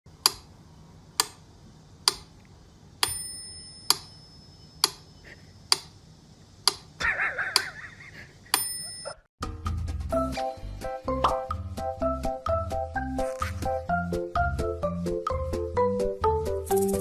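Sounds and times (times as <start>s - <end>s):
sharp clock-like ticks: 2.0s - 2.3s, 6.6s - 6.9s
small bell ringing: 3.0s - 5.2s, 8.6s - 9.3s.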